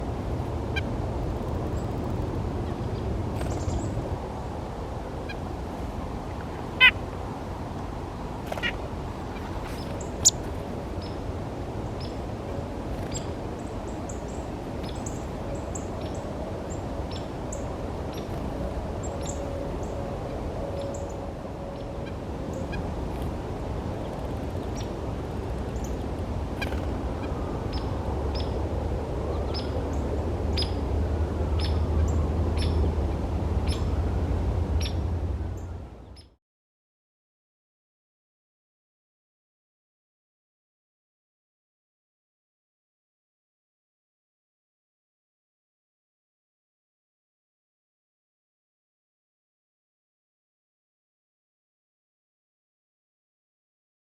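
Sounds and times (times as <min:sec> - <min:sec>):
low background rumble: 0:22.6 - 0:36.2.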